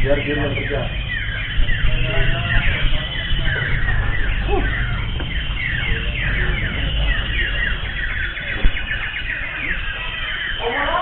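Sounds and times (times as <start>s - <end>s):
birds whistled chirps: 0.0s - 11.0s.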